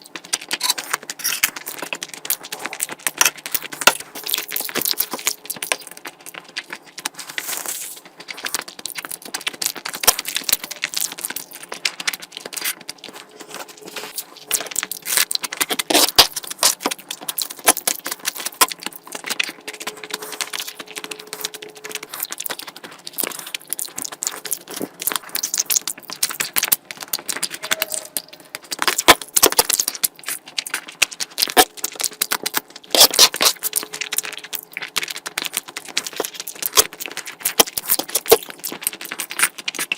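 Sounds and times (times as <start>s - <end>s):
close chewing with wet clicks: 0.0s - 7.1s, 8.1s - 39.9s.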